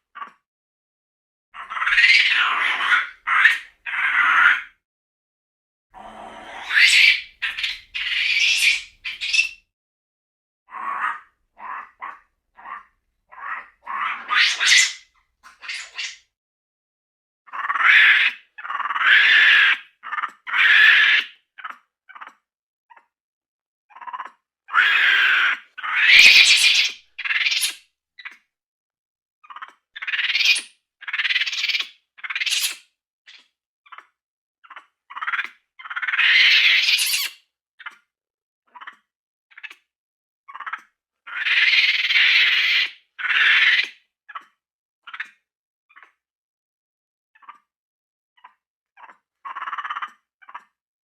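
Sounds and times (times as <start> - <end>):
creature chirping and squealing: 1.6 - 4.7, 6.0 - 9.6, 10.7 - 16.2, 17.5 - 22.4, 24.0 - 27.8, 29.5 - 32.8, 33.9 - 38.0, 40.5 - 44.5, 48.4 - 50.7.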